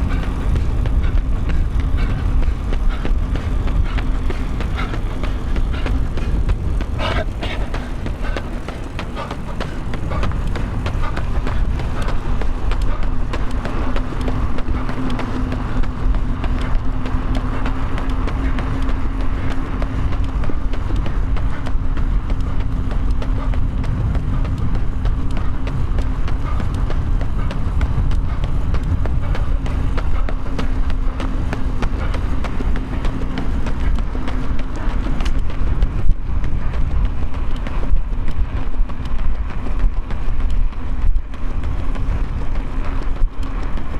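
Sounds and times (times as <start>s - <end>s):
low hum: 0.0s - 43.9s
running footsteps: 0.0s - 43.9s
wind buffeting microphone: 0.0s - 43.9s.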